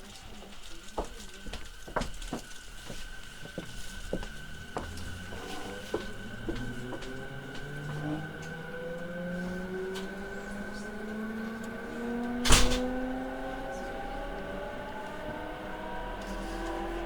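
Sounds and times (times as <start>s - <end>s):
electric train motors whining: 0.0s - 17.0s
sharp clank: 12.4s - 12.9s.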